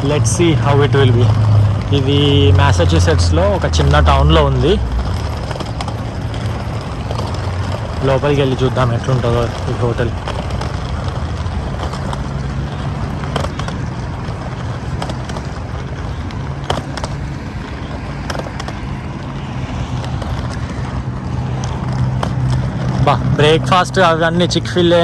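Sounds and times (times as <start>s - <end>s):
vehicle engine humming: 0.0s - 25.0s.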